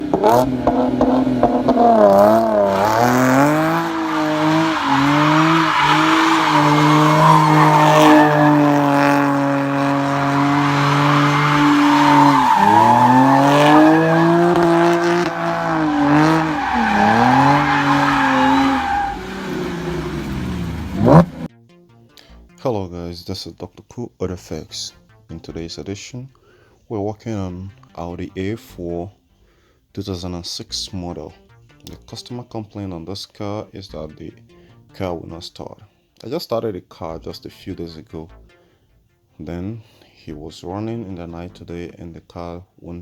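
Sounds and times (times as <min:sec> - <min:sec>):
race car engine revving: 0:00.0 - 0:21.5.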